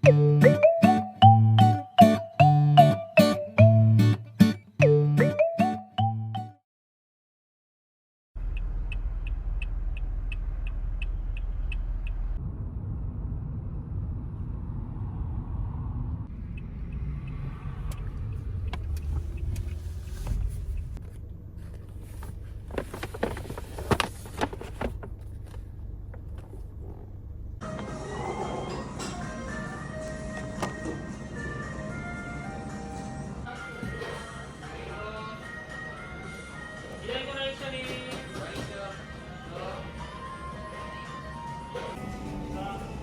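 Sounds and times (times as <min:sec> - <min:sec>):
car engine rumbling: 0:08.4 - 0:28.1.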